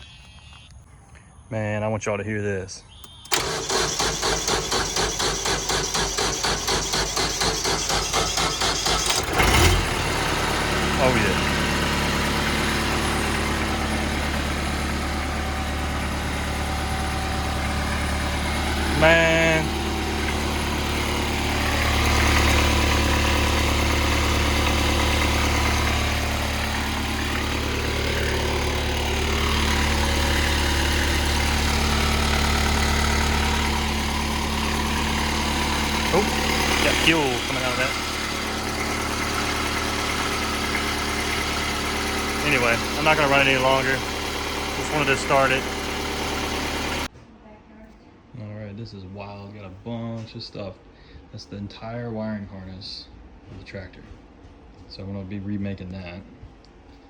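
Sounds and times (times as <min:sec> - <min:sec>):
diesel engine cranking and starting: 0:03.0 - 0:47.2.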